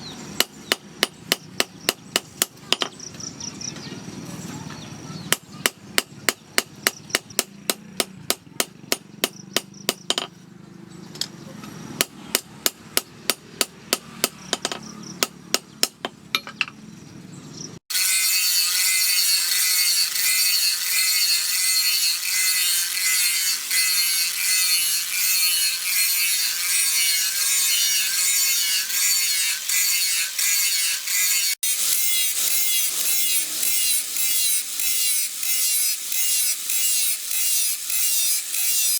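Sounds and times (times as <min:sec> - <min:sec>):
hammer striking steel: 0:00.4 - 0:02.9, 0:05.3 - 0:10.3, 0:12.0 - 0:16.8
hand tool rasping steel: 0:17.9 - 0:38.9.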